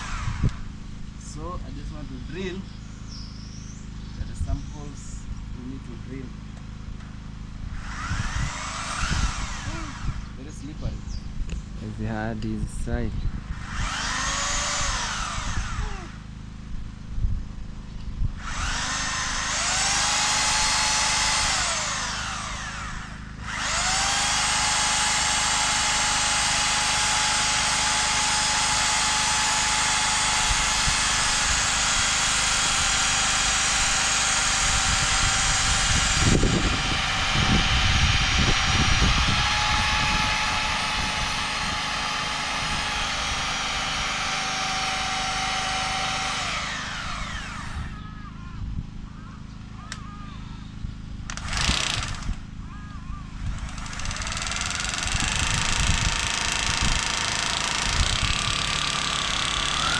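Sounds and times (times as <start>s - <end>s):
electric drill boring: 0.0s - 0.8s, 7.7s - 10.6s, 13.5s - 16.3s, 18.4s - 48.2s, 51.3s - 52.4s, 53.4s - 59.9s.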